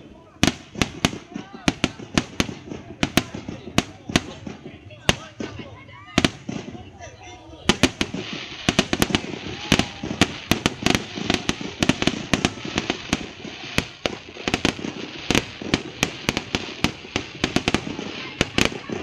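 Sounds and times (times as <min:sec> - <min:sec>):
fireworks cracks and bangs: 0:00.0 - 0:19.0
rumble of explosions: 0:07.7 - 0:19.0.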